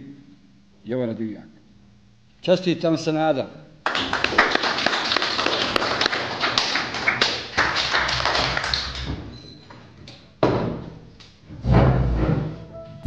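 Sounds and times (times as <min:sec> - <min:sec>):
students applauding: 0:03.8 - 0:09.2.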